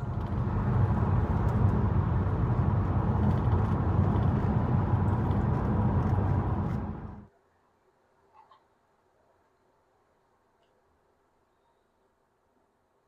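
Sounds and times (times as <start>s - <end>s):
car driving low rumble: 0.0s - 7.3s.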